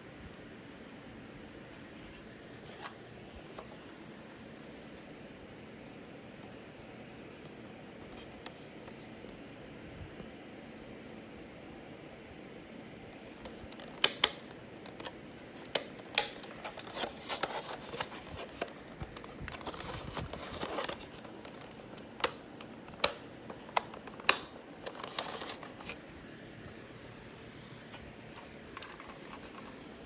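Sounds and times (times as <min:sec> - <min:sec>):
rustling: 0:16.4 - 0:21.9.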